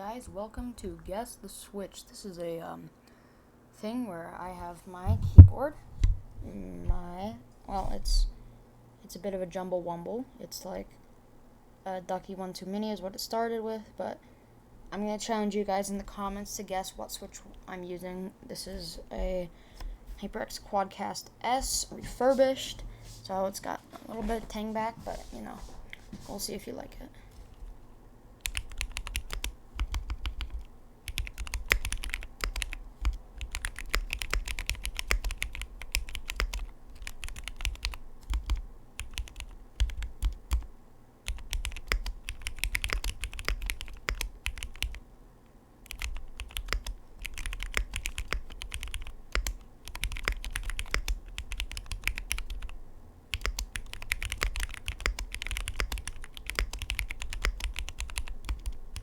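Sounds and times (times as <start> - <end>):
mechanical keyboard typing: 28.4 - 45.0, 45.8 - 59.0.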